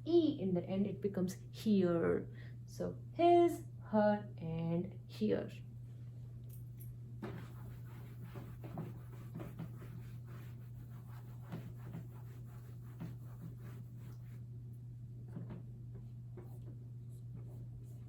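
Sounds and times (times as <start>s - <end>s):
steady low hum: 0.0s - 18.0s
pen writing strokes: 7.2s - 14.4s.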